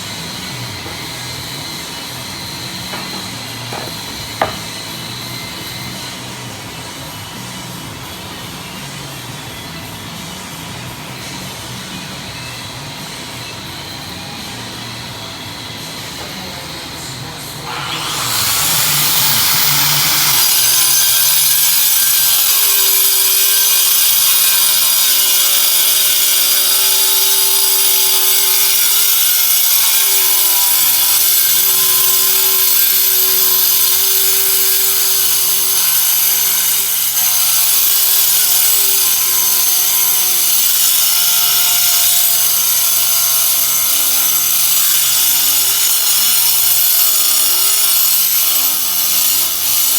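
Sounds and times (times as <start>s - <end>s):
power tool whining while cutting: 17.6s - 49.9s.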